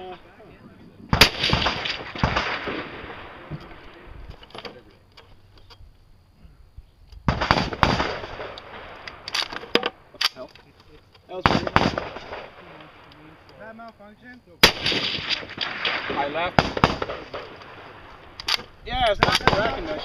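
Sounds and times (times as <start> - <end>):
rifle shots echoing: 1.1 - 4.1, 7.3 - 10.1, 11.3 - 13.5, 14.6 - 20.0.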